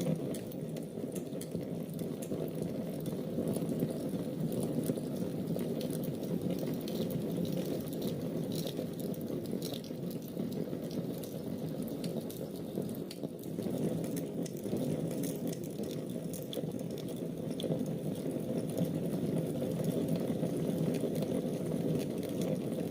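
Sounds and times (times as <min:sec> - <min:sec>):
fire crackling and popping: 0:00.0 - 0:22.9.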